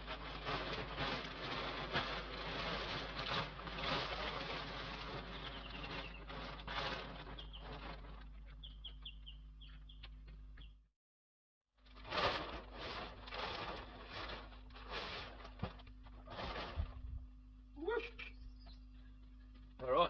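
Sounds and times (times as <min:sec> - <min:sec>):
bird chirping: 0:07.3 - 0:07.7, 0:08.4 - 0:10.8, 0:17.8 - 0:19.7.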